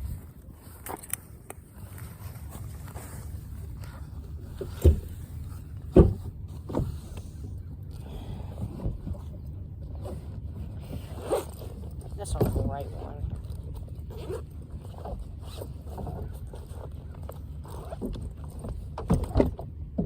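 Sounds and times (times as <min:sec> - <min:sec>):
wind rumbling on microphone: 0:00.0 - 0:17.3.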